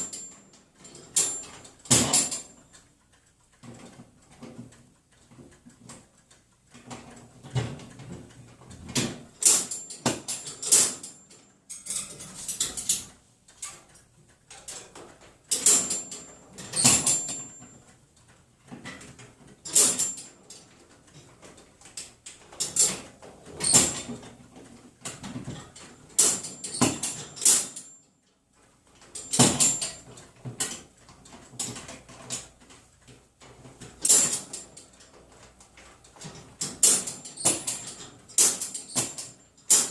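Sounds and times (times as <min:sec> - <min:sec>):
wire cage doors clanking: 0:00.0 - 0:02.6, 0:08.8 - 0:13.9, 0:14.5 - 0:17.7, 0:22.4 - 0:24.3, 0:25.1 - 0:28.0, 0:29.0 - 0:32.5, 0:33.6 - 0:39.9.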